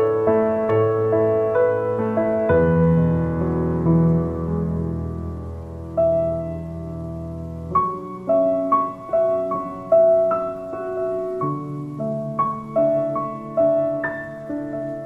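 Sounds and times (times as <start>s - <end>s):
soft solo piano: 0.0s - 15.0s.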